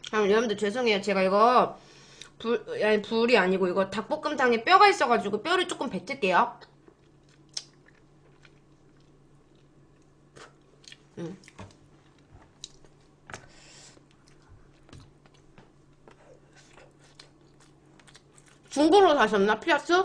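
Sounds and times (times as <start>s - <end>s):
person chewing with mouth clicks: 6.9s - 13.4s, 14.0s - 18.7s
lip smacks: 7.2s - 9.7s.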